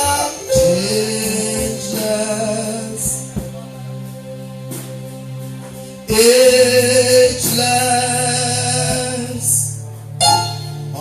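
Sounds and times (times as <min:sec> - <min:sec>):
man singing: 0:00.0 - 0:03.9, 0:06.1 - 0:09.8
sustained instrumental backing: 0:00.0 - 0:11.0.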